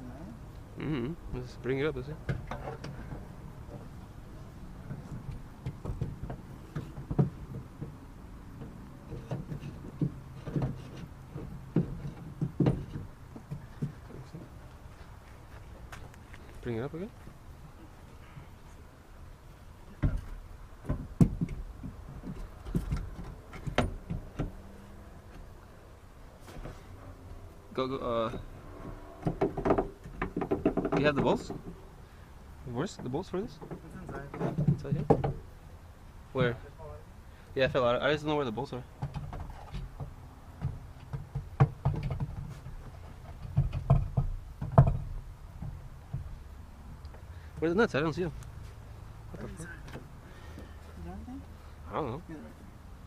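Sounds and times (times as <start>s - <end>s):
metal clanks and knocks: 2.2s - 3.9s, 4.8s - 14.2s, 20.0s - 24.8s, 28.2s - 31.8s, 32.8s - 35.5s, 39.0s - 46.4s.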